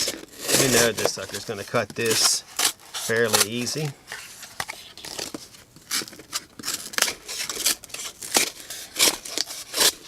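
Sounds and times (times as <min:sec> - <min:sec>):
knife slicing cardboard: 0:00.0 - 0:03.8, 0:06.6 - 0:10.0.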